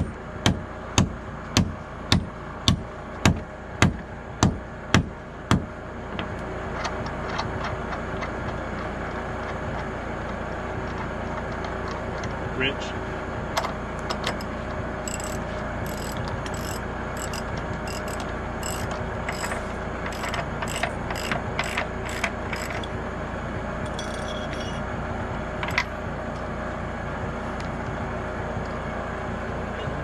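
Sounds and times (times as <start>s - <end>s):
steady mechanical hum: 0.0s - 30.0s
ratchet wrench clicking: 14.3s - 23.0s, 23.9s - 24.8s.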